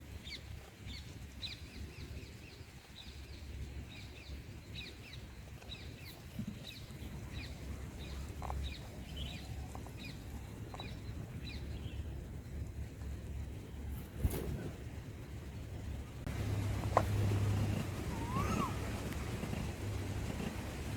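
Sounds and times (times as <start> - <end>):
bird chirping: 4.0 - 12.0, 16.3 - 20.8.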